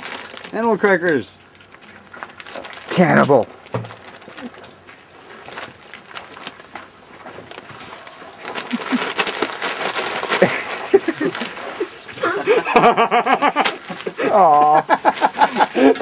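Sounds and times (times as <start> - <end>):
clicks and rustles: 0.0 - 12.2, 13.4 - 14.3
quick rhythmic laughter: 10.3 - 16.0.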